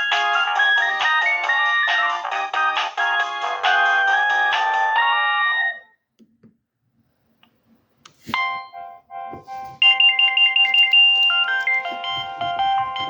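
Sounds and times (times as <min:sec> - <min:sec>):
mobile phone ringtone: 0:00.0 - 0:06.0, 0:09.8 - 0:13.0.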